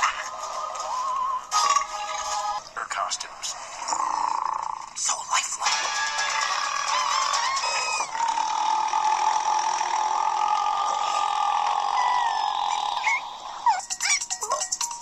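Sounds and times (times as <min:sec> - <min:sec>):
long drawn-out burp: 0:08.1 - 0:13.6.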